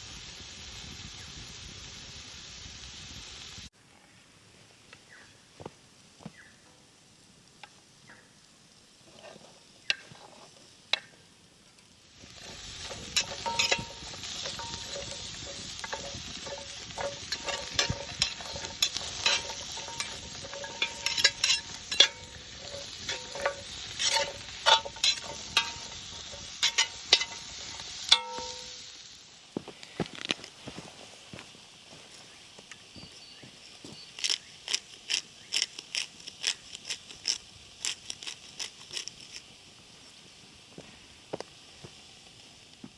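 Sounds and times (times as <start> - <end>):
food sizzling in a pan: 0.0 - 3.7, 8.0 - 29.6, 40.0 - 42.9
utensil scraping a pan: 12.1 - 29.1.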